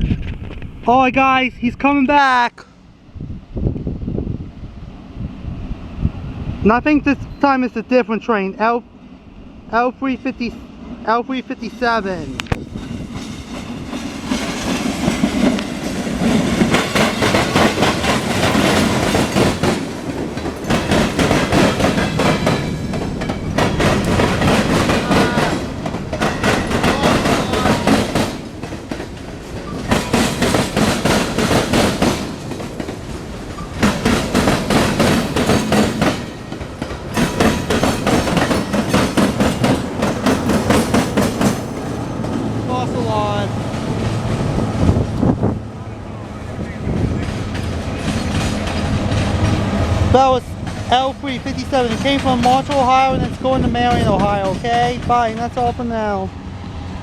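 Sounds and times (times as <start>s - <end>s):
train wheels clattering over rail joints: 12.4s - 42.6s, 46.9s - 55.7s.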